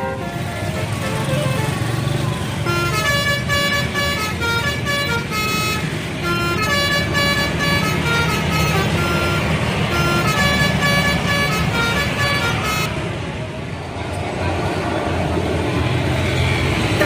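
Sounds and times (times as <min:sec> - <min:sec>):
multi-tone bus horn tune: 0:00.0 - 0:13.4
bus engine rumbling: 0:00.0 - 0:17.0.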